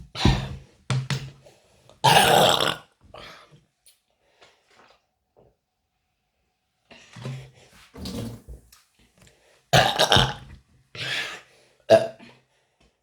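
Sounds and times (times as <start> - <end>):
person burping: 2.0 - 2.9, 9.8 - 10.5, 11.9 - 12.3.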